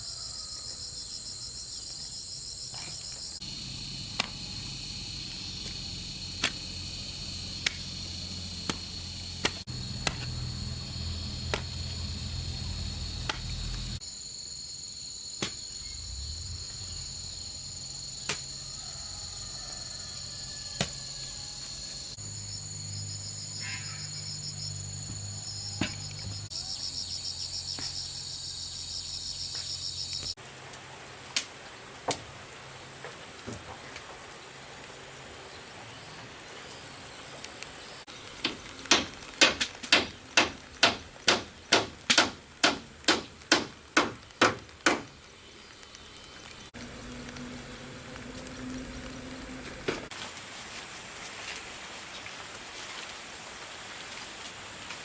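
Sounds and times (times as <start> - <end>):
crickets and insects trilling: 0.0 - 33.0, 33.8 - 55.0
sharp knocks: 38.4 - 45.1.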